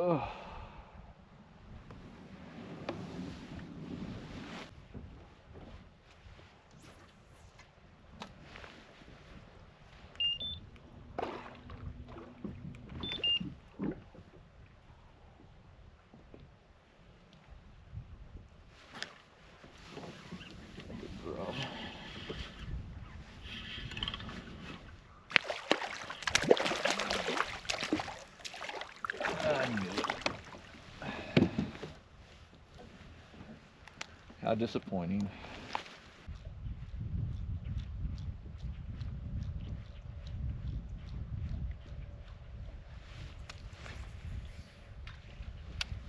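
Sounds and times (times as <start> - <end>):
low steady hum: 9.6 - 15.8.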